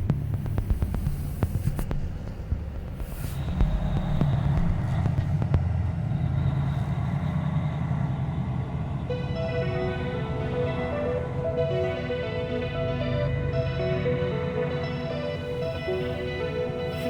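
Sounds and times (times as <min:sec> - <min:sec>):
music: 0:00.0 - 0:05.6, 0:09.1 - 0:17.0
truck engine rumble: 0:00.0 - 0:17.0.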